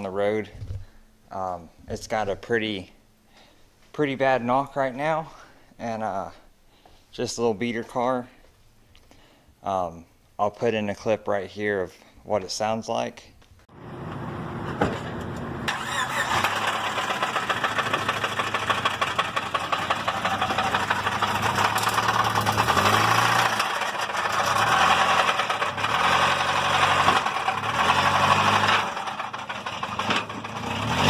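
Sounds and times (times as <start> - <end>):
car engine knocking while revving: 16.5 - 31.0.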